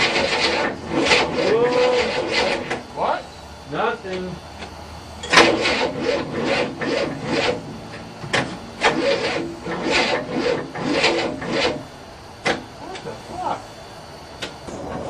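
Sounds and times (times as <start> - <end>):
car engine cranking: 0.0 - 2.9, 5.2 - 13.2.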